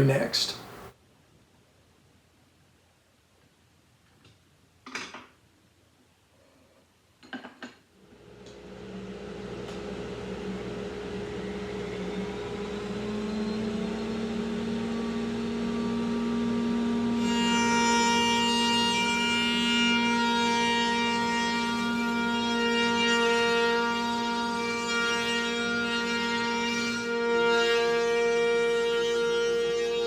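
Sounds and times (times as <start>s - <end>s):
woodworking router whining: 8.2s - 30.0s.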